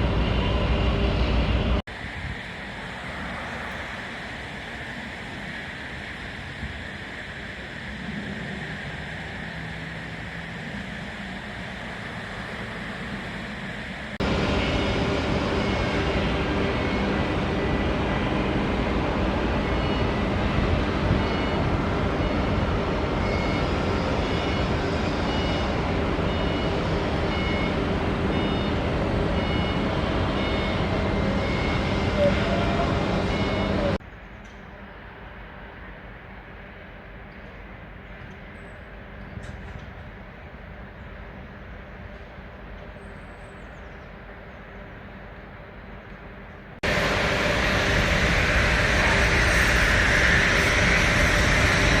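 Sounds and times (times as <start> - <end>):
machinery noise: 0.0 - 34.0, 44.2 - 52.0
high electronic warning beep: 19.6 - 34.0.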